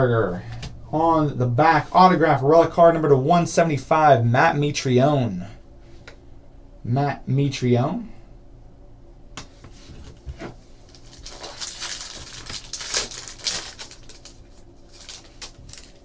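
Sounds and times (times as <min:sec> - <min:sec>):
foil wrapper crinkling and tearing: 0:10.9 - 0:16.0.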